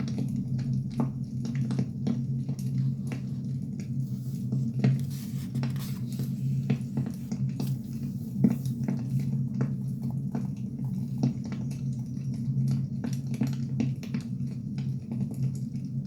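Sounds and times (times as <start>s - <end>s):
steady low hum: 0.6s - 13.0s.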